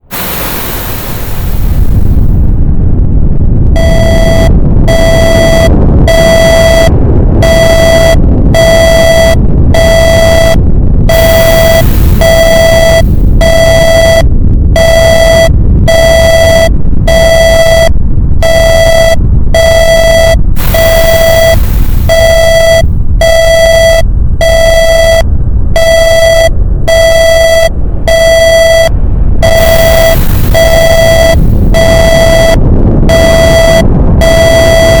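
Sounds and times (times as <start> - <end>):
low volcano rumble: 0.0 - 35.0
buzzy electronic alarm beeps: 3.8 - 35.0.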